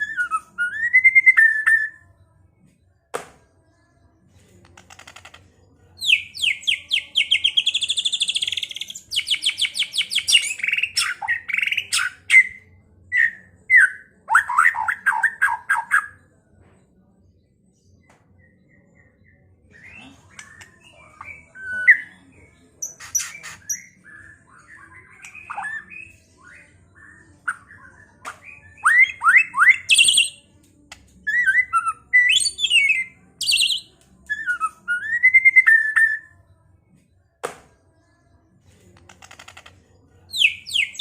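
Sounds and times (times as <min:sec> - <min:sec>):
songbird whistling and trilling: 0:00.0 - 0:02.0, 0:06.0 - 0:12.6, 0:22.8 - 0:30.4, 0:31.3 - 0:36.3, 0:40.3 - 0:41.0.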